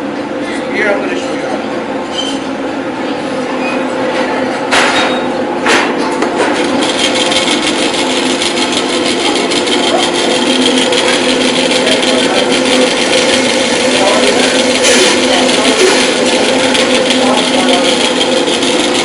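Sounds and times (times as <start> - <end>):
bandsaw cutting wood: 6.4 - 19.0.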